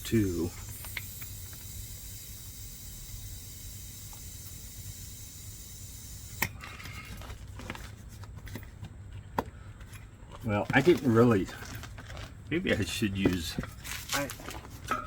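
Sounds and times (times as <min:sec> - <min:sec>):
air hissing from inner tube: 0:00.2 - 0:06.6
valve click: 0:00.6 - 0:06.6.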